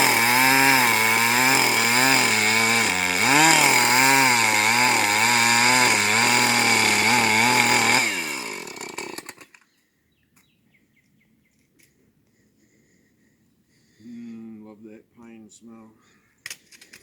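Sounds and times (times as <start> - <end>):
chainsaw running fast: 0.0 - 9.6.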